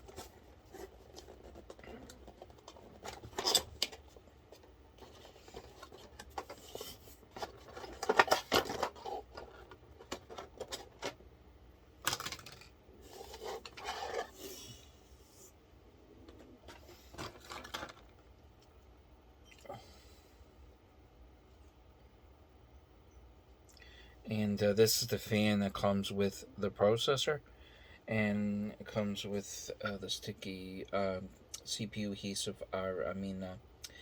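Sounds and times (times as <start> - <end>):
packaging rubbing and rustling: 0.0 - 11.2, 12.0 - 14.7, 16.3 - 18.2.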